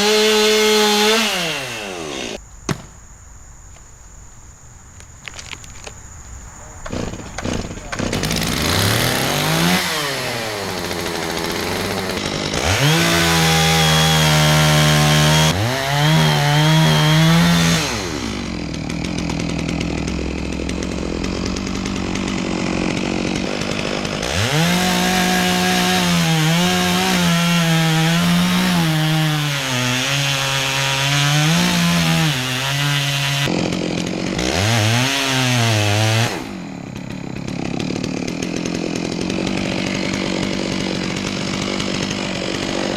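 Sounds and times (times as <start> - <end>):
chainsaw cutting wood: 0.0 - 2.9, 6.8 - 42.9.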